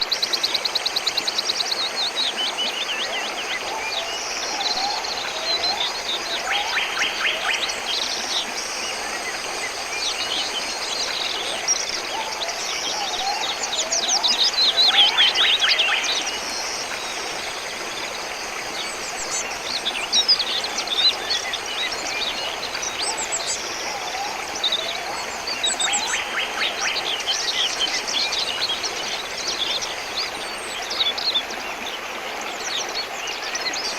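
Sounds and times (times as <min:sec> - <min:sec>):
stream rushing: 0:00.0 - 0:33.9.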